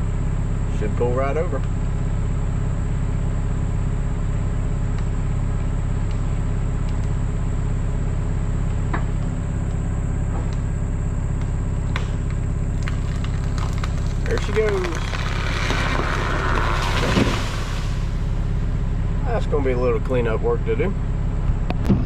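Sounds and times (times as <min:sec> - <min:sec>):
engine running steadily: 0:00.0 - 0:22.0
sharp cracks: 0:11.4 - 0:18.6.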